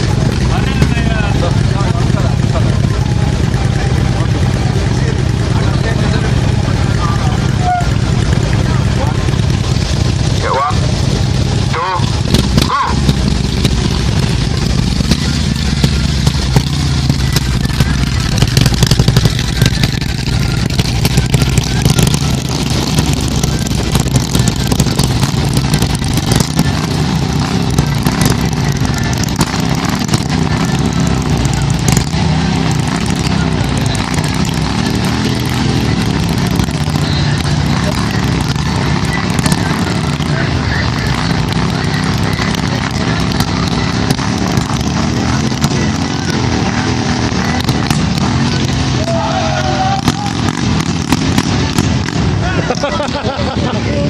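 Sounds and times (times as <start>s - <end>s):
faint voices: 0.0s - 54.0s
motorcycle engines rumbling: 0.0s - 54.0s
sharp engine pops: 50.0s - 52.3s.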